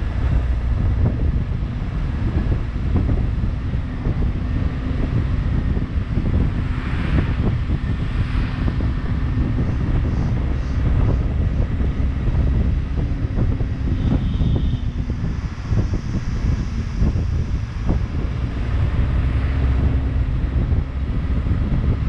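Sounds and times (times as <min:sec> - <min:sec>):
vehicle engine low rumble: 0:00.0 - 0:22.0
wind buffeting microphone: 0:00.0 - 0:22.0.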